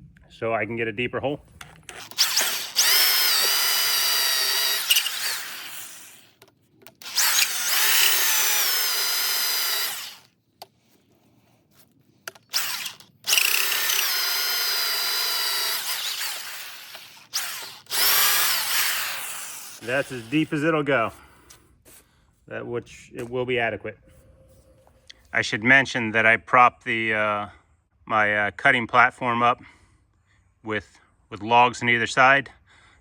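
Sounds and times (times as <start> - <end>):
drill boring into log: 1.9 - 10.3, 12.5 - 20.7.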